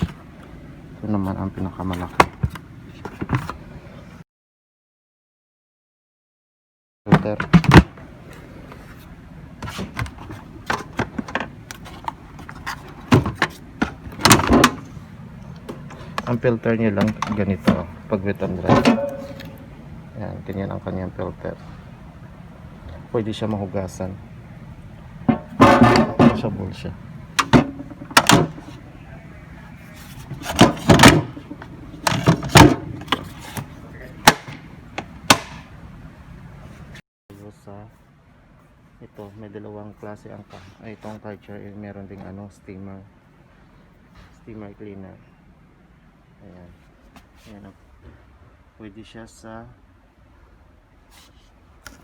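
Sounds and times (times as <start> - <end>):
vacuum cleaner clicks and knocks: 9.7 - 14.9, 17.0 - 17.9, 25.3 - 26.5, 27.4 - 28.6, 30.3 - 35.6.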